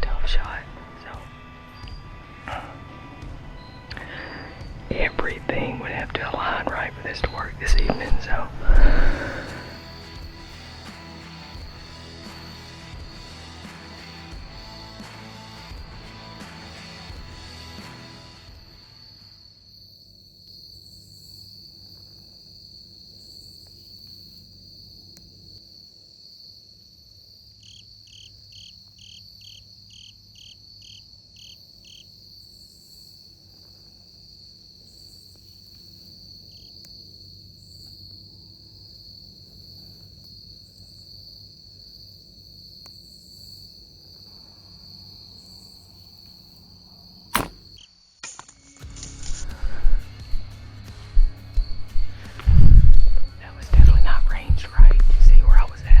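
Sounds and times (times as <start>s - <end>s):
insects chirring: 0.0s - 13.2s, 18.5s - 50.5s
pulsed insect trill: 0.0s - 13.4s, 18.4s - 50.5s
bow shot snap: 47.3s - 47.8s.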